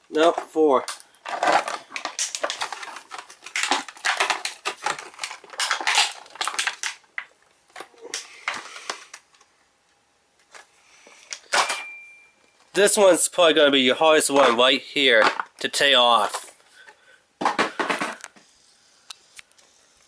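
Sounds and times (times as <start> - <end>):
plastic packaging crackling: 0.2 - 9.4.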